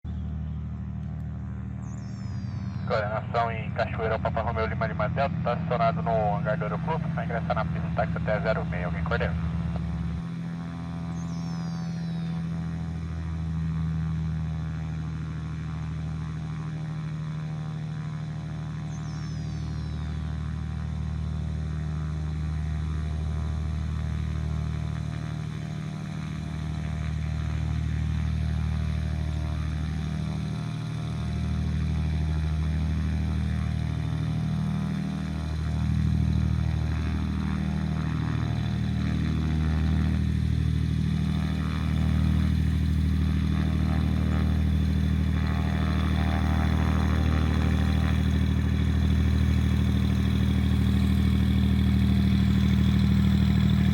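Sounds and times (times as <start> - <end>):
propeller plane engine droning: 0.1 - 53.9.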